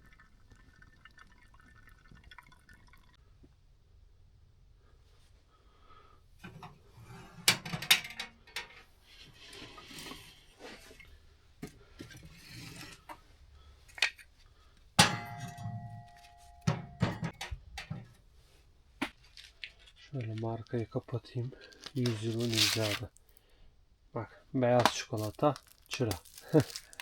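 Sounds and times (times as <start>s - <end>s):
metal and glass clinking: 15.0s - 17.4s
ringing metal clank: 15.0s - 17.4s
rustling: 18.3s - 23.5s, 25.1s - 27.0s.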